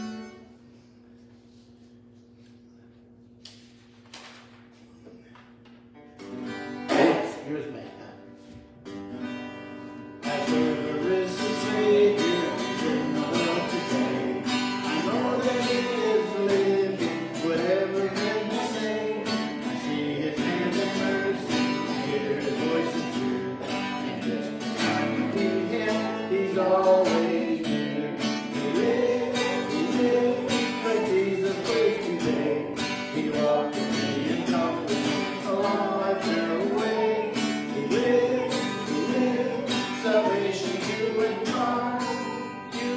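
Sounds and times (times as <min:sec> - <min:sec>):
strummed acoustic guitar: 0:00.0 - 0:00.7, 0:06.0 - 0:42.9
live worship music: 0:10.2 - 0:42.9.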